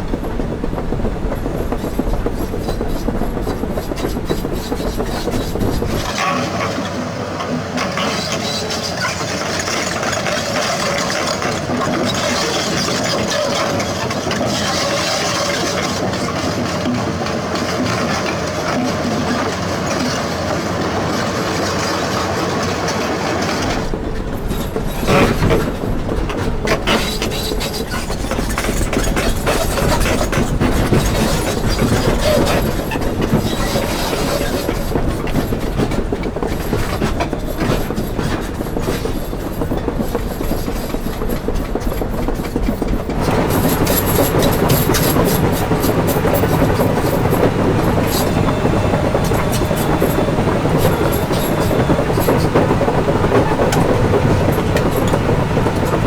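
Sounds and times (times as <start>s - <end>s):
deep rumble: 0.0s - 6.1s
knocks and clanks: 0.0s - 6.2s, 23.6s - 56.0s
excavator engine and hydraulics: 0.0s - 56.0s.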